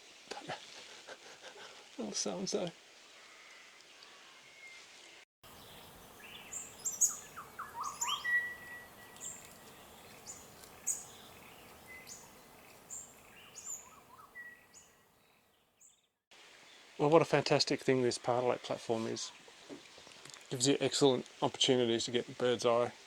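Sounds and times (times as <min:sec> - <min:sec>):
small birds chirping: 0:00.0 - 0:17.0.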